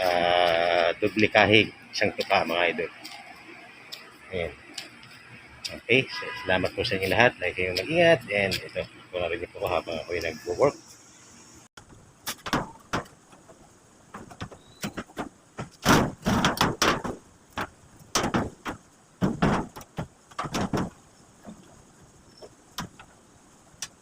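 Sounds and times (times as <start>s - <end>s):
metal knocks and clanks: 11.8s - 24.0s.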